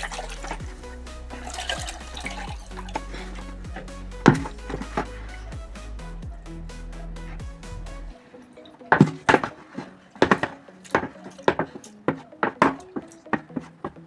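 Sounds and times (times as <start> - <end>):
faint background music: 0.0 - 14.0
container and utensil clattering: 1.4 - 3.0.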